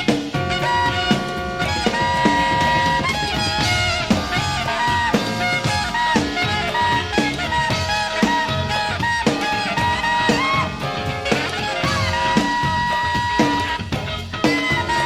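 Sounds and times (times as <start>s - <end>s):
jazz-funk band playing: 0.0s - 15.0s
saxophone and horn melody: 0.0s - 15.0s.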